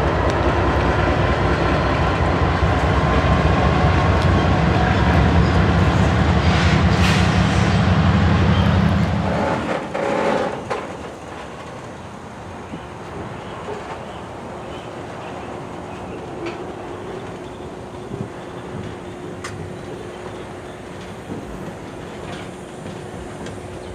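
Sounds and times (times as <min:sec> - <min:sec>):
diesel locomotive engine rumble: 0:00.0 - 0:23.9
rail cars rolling: 0:00.0 - 0:23.9
wheels clacking over rail joints: 0:00.1 - 0:23.9.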